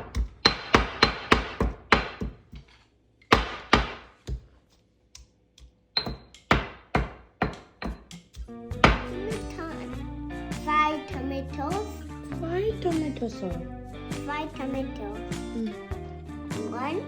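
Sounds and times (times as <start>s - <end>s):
knife chopping on cutting board: 0.0s - 2.7s, 3.3s - 4.5s.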